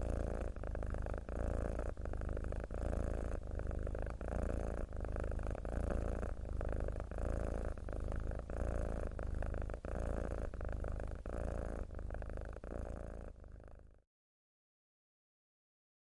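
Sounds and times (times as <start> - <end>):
cat purring: 0.0 - 14.0.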